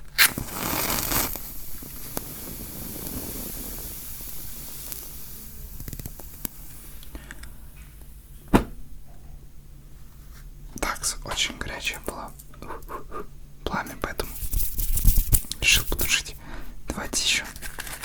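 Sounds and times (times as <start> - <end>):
match striking on matchbox: 0.0 - 7.5, 14.2 - 16.2, 17.4 - 18.0
match flaring with a hiss: 0.0 - 8.4, 14.2 - 16.3
flames hissing and crackling: 0.0 - 8.5, 14.2 - 16.4.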